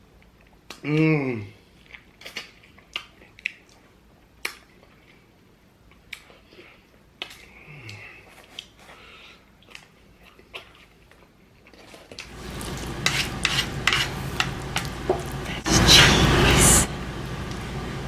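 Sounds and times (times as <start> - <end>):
close chewing with mouth smacks: 1.6 - 12.3.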